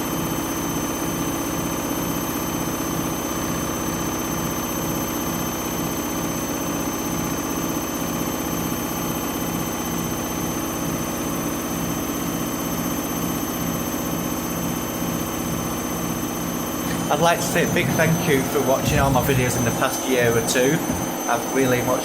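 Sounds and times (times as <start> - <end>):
washing machine spinning: 16.7 - 22.0.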